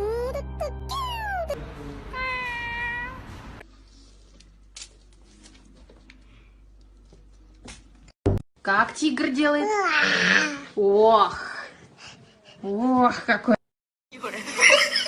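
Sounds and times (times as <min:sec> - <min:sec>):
cat meowing: 0:02.1 - 0:03.2.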